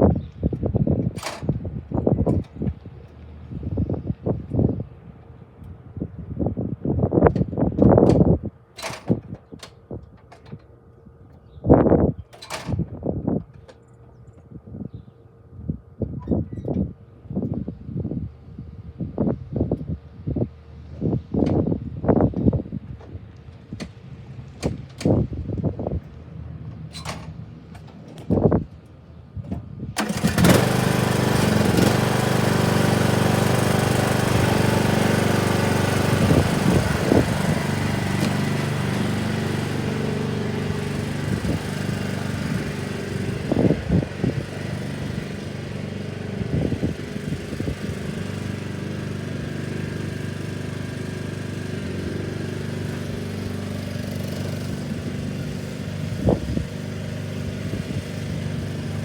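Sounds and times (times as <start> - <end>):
lawnmower engine running: 0.4 - 3.8, 29.9 - 59.0.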